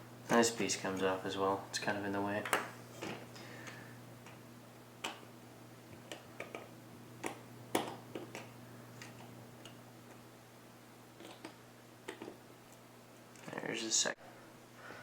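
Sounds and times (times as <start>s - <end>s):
screwdriver clicks and taps: 5.9s - 10.2s, 11.2s - 12.4s.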